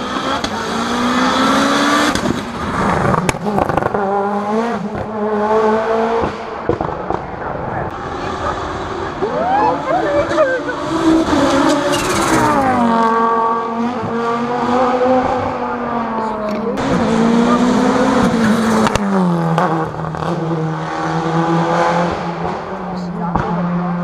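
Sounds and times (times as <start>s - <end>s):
rally car engine running hard: 0.0s - 24.0s.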